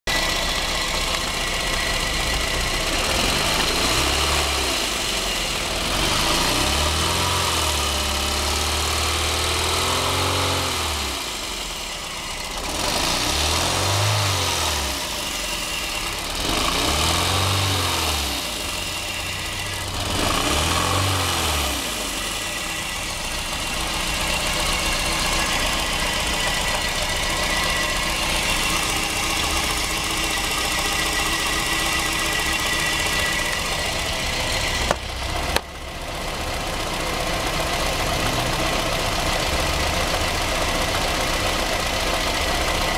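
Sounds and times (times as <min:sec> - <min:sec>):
misfiring car engine revving: 0:00.1 - 0:42.9.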